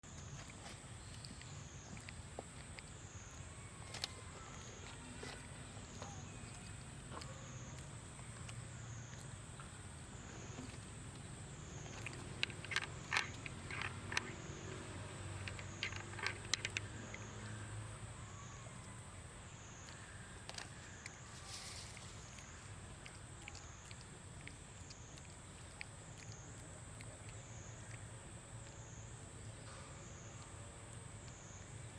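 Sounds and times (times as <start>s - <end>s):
sharp clicks and cracks: 11.8s - 17.2s.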